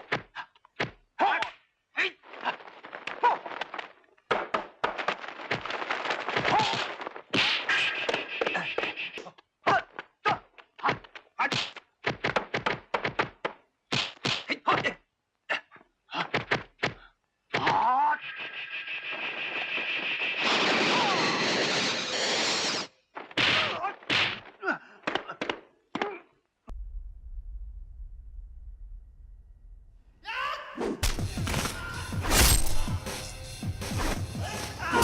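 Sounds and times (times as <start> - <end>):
punch and kick impacts: 31.0 - 33.1.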